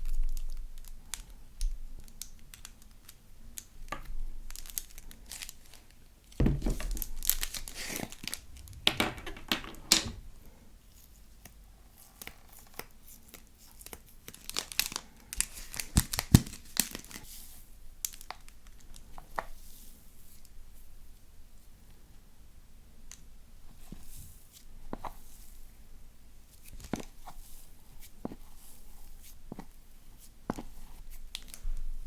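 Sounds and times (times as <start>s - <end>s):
slime being kneaded by hand: 11.9s - 20.0s, 26.4s - 32.0s.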